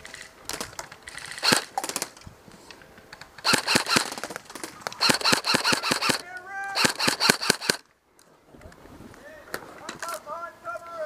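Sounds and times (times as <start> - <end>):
airsoft guns firing bursts: 0.0 - 2.2, 3.4 - 7.8
airsoft gun single shots: 1.4 - 2.1, 3.4 - 4.3, 5.0 - 7.8.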